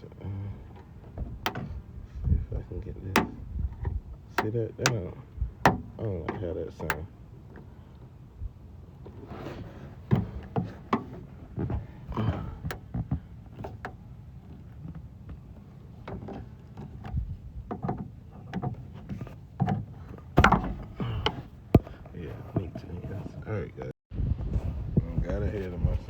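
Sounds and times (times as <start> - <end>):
car door part prying: 0.6 - 2.0, 3.0 - 7.7, 10.0 - 22.1.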